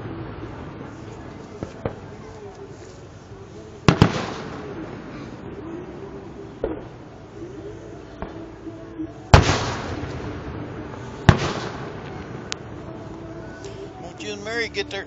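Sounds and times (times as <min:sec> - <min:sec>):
fireworks booming with echo: 0:03.8 - 0:06.0, 0:06.6 - 0:07.1, 0:09.3 - 0:12.8
small firework pops: 0:03.9 - 0:04.8, 0:06.6 - 0:06.9, 0:09.3 - 0:10.4, 0:11.2 - 0:12.6.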